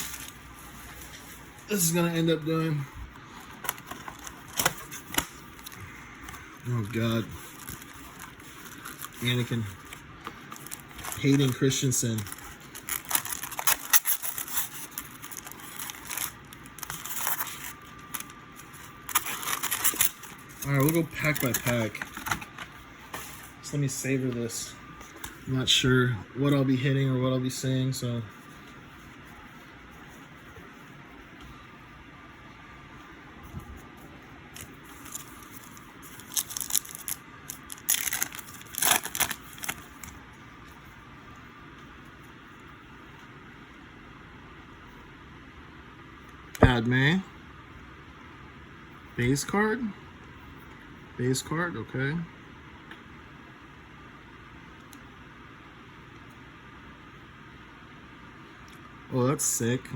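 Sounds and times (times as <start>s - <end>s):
plastic packaging crinkling: 3.4s - 5.9s, 6.5s - 23.4s, 34.5s - 40.2s.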